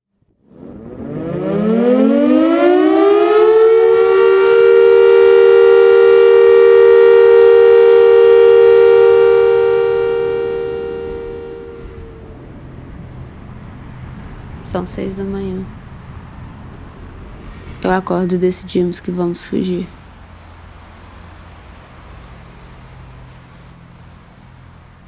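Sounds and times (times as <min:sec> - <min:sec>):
siren winding up: 0:00.5 - 0:12.3.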